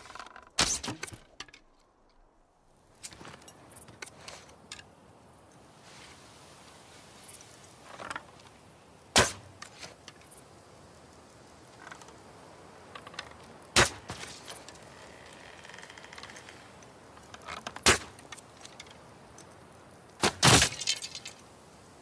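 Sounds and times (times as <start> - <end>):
handling clicks and rustles: 0.0 - 21.8
arrow shot crack: 0.6 - 1.2, 9.1 - 9.5, 13.8 - 14.4, 17.8 - 18.2, 20.2 - 20.8.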